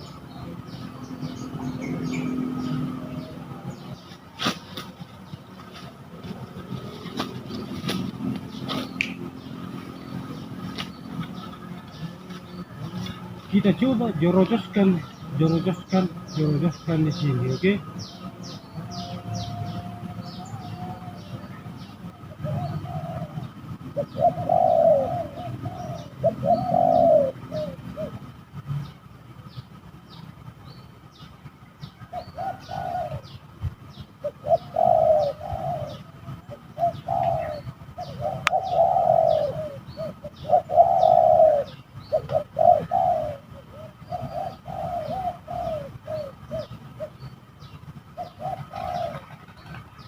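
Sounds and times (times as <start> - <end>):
doves cooing: 0.0 - 50.0
small birds chirping: 0.0 - 50.0.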